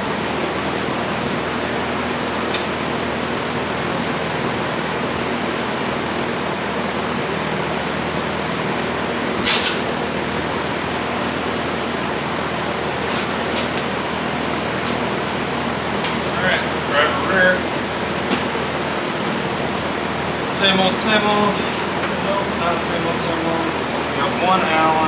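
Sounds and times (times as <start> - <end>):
short sharp hiss: 9.4 - 9.9.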